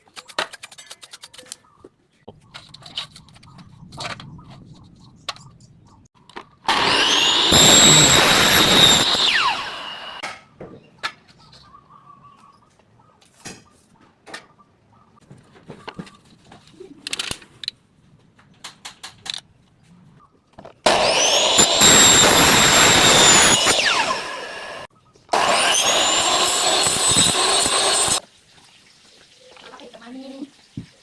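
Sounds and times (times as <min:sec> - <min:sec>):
power tool motor whine: 0:06.7 - 0:10.2, 0:20.9 - 0:28.2.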